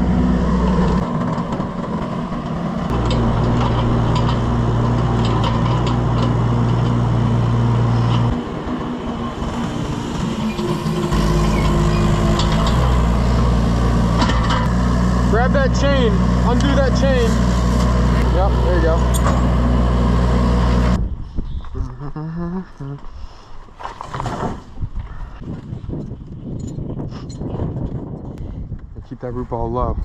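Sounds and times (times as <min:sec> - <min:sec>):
excavator engine running: 0:00.0 - 0:21.0
metallic clanks and clicks: 0:02.9 - 0:07.0.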